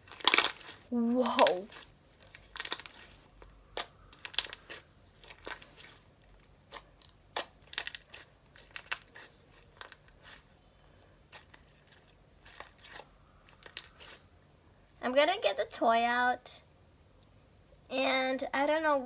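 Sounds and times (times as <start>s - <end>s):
slime clicking and popping: 0.0s - 5.7s, 6.7s - 9.3s.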